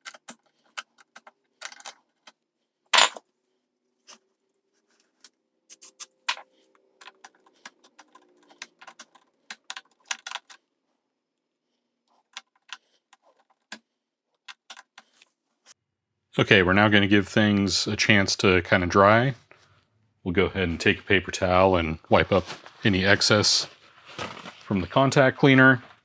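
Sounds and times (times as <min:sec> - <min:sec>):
tubes clicking and rattling in sockets: 0:00.0 - 0:02.4, 0:03.0 - 0:03.2, 0:05.7 - 0:10.6, 0:12.1 - 0:13.8, 0:14.4 - 0:15.2.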